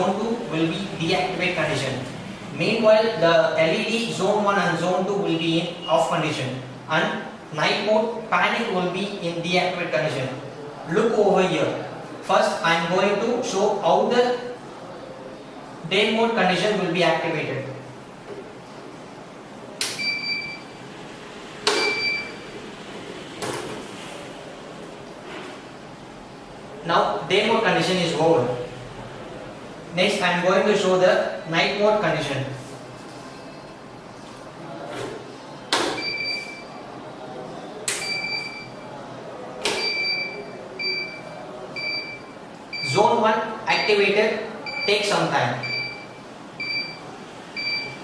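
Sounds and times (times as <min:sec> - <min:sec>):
high steady beep: 0:20.0 - 0:20.8, 0:21.8 - 0:22.4, 0:36.0 - 0:36.7, 0:38.0 - 0:38.8, 0:39.8 - 0:43.0, 0:44.6 - 0:47.0, 0:47.6 - 0:48.0.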